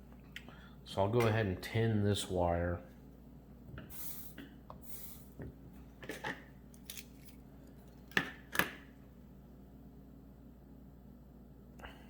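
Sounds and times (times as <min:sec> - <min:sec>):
hand tools and wire rustling: 0:06.1 - 0:08.2.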